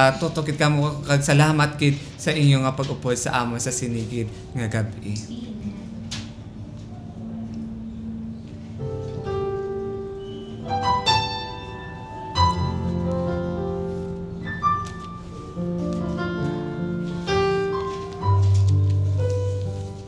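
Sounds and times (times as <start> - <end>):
keyboard playing chords: 4.0 - 20.0.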